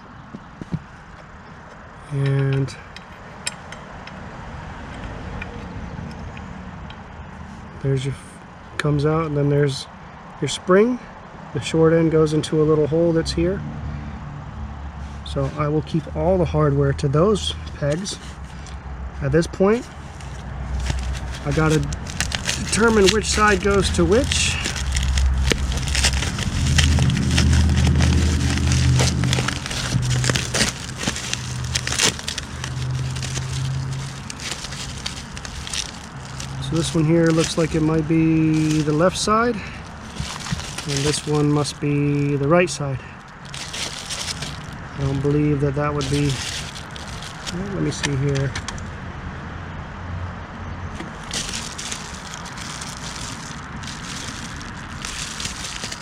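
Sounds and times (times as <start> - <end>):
clicks and knocks of parts handled: 0.6 - 4.2, 19.8 - 39.2, 39.8 - 42.4, 46.0 - 48.8
crackly rustling: 17.6 - 18.9, 19.5 - 49.0, 50.9 - 56.0.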